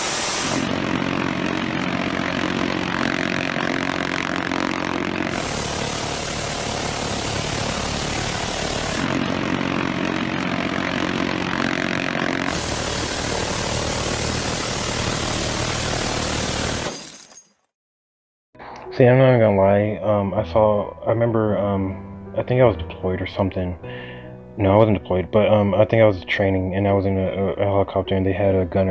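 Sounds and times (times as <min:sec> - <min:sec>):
propeller aircraft drone: 0:00.0 - 0:16.9
machine gun firing bursts: 0:05.3 - 0:09.3.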